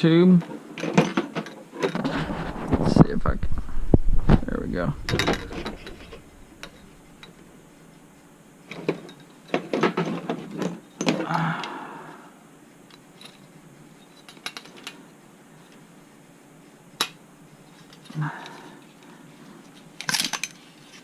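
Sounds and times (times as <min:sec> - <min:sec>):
clicks and knocks of handling: 0:20.0 - 0:21.0.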